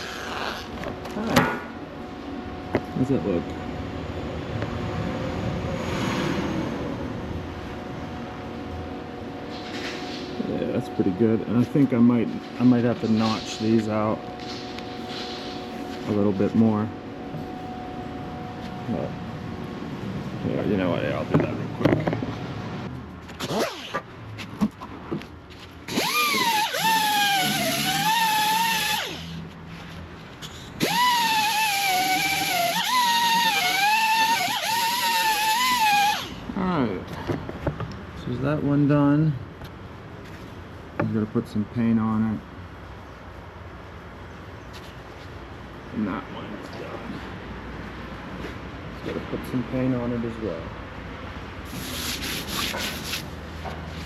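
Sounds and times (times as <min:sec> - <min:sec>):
machine hum: 0:00.0 - 0:23.6
constant tones: 0:00.7 - 0:22.4
power grinder whining on steel: 0:25.9 - 0:29.4, 0:30.8 - 0:36.4
hiss: 0:51.7 - 0:53.2.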